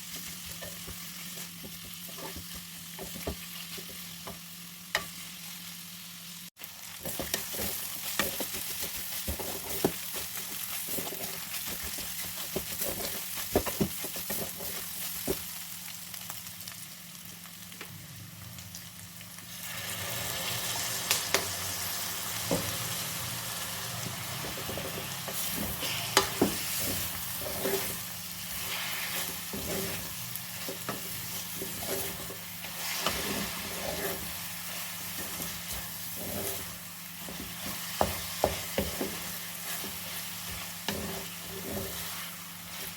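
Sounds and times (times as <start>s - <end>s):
food sizzling in a pan: 0.0s - 42.9s
utensil scraping a pan: 24.2s - 42.9s.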